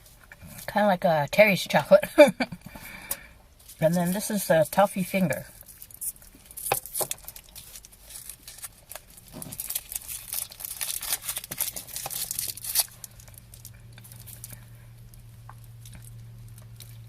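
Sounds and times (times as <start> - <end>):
low steady hum: 0.0 - 17.0
plastic wrapper crackling: 5.5 - 17.0.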